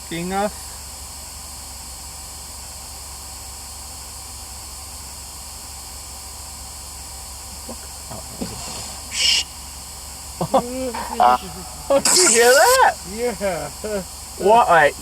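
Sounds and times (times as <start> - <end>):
low hum: 7.5 - 15.0
steady hiss: 7.6 - 15.0
sharp hissing burst: 8.2 - 14.0.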